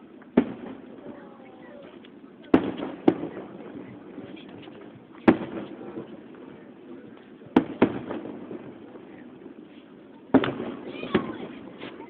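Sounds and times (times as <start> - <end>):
fireworks exploding: 0.0 - 12.0.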